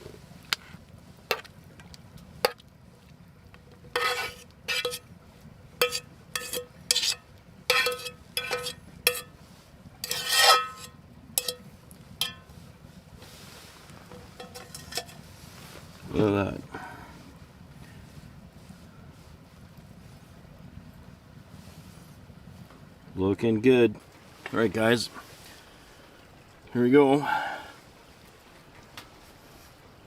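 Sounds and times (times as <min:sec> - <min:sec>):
metal utensil scraping a pan: 0:03.9 - 0:05.1, 0:05.8 - 0:09.4, 0:10.0 - 0:12.5, 0:14.1 - 0:15.3.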